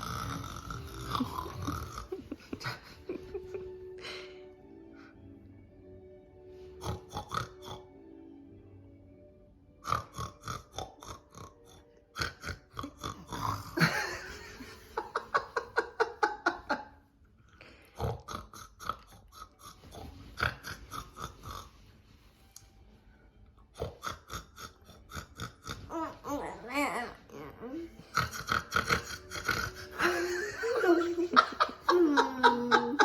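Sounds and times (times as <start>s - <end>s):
rattling snore: 0.0s - 2.1s, 6.8s - 7.8s, 9.8s - 13.8s, 18.0s - 21.8s, 23.8s - 26.6s, 27.3s - 30.0s.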